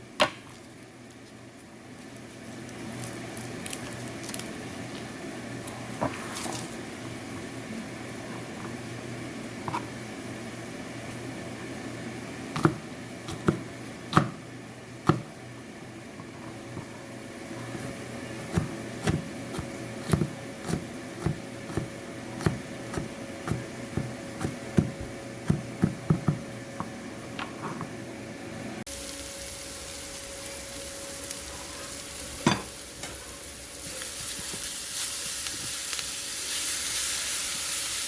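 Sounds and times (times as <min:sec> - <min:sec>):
steady low hum: 0:00.0 - 0:33.9
knife chopping on cutting board: 0:12.6 - 0:14.4, 0:17.8 - 0:26.5.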